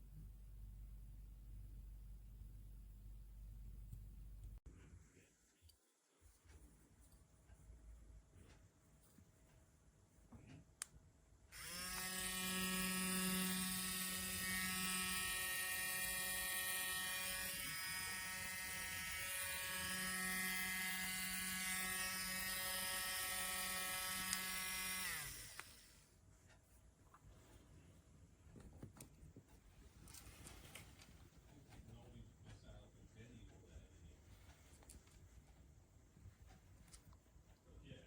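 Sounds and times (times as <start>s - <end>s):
click: 10.5s - 11.0s, 25.6s - 25.8s
nail drill motor whining: 11.6s - 26.0s.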